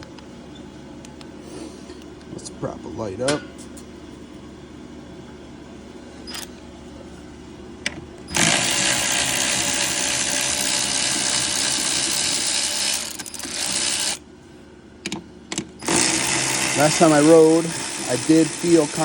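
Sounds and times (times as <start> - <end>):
power drill running: 8.3 - 14.2, 15.8 - 19.0.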